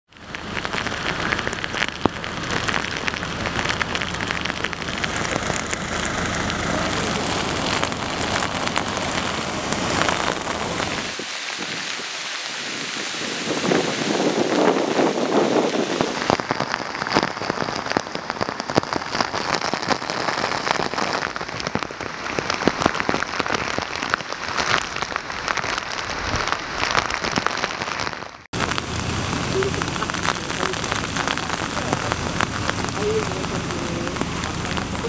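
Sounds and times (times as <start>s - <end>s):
low rumble: 0.1s - 11.9s, 28.5s - 35.0s
heavy rain falling: 0.1s - 35.0s
raindrops ticking: 0.1s - 35.0s
wind gusting across microphone: 0.2s - 27.4s.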